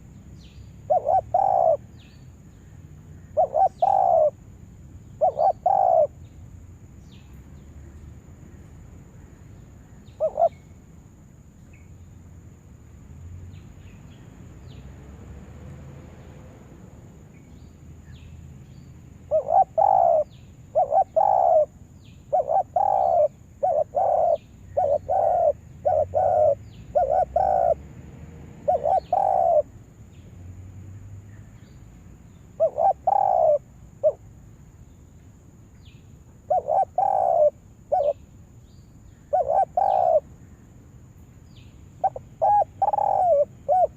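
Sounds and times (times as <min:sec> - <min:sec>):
dove cooing: 0:00.9 - 0:01.9, 0:03.3 - 0:04.4, 0:05.2 - 0:06.2, 0:10.2 - 0:10.6, 0:19.3 - 0:27.8, 0:28.6 - 0:29.7, 0:32.6 - 0:34.2, 0:36.5 - 0:38.2, 0:39.3 - 0:40.2, 0:42.0 - 0:43.9.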